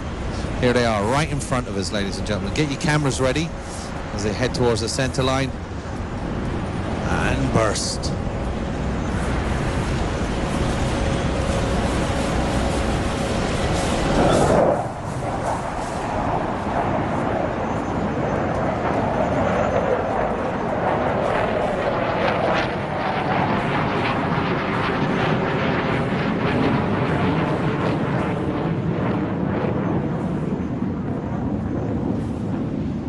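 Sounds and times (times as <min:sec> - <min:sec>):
fighter jets roaring past: 0:00.0 - 0:33.0.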